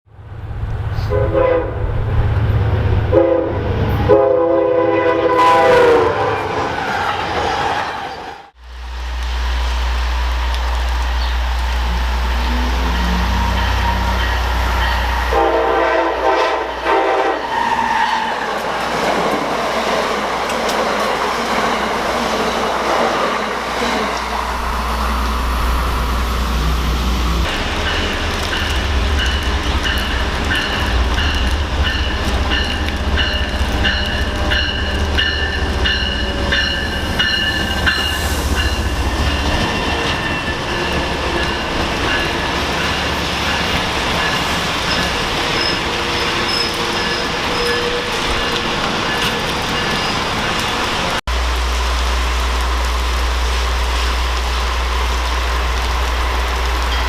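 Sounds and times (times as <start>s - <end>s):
train rumbling past: 0.1s - 57.0s
train horn: 1.0s - 1.9s, 3.1s - 6.6s, 11.2s - 18.3s
steady whine: 24.3s - 29.3s.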